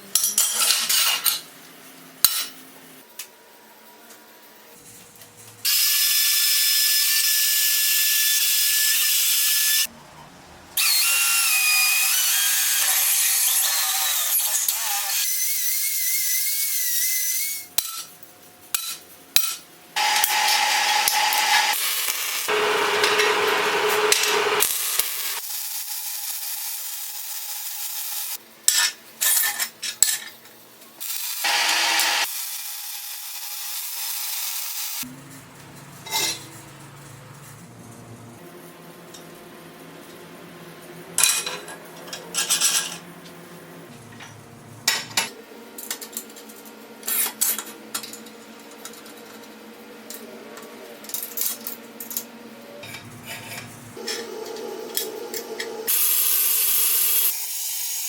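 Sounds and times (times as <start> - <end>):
power tools grinding metal: 5.6 - 9.9, 10.8 - 17.7, 20.0 - 28.4, 31.0 - 38.3, 53.0 - 58.0.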